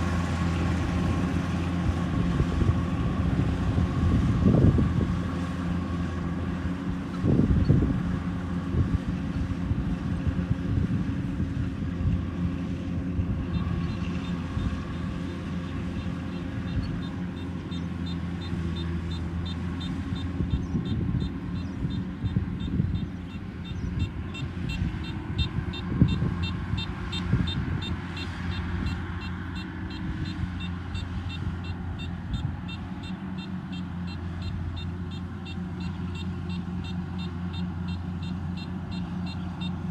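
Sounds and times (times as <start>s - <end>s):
harvester diesel engine running: 0.0s - 39.9s.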